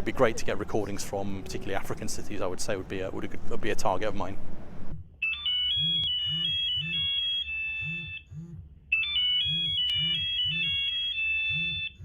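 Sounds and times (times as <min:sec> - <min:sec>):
electronic phone ringtone: 0:05.2 - 0:12.0.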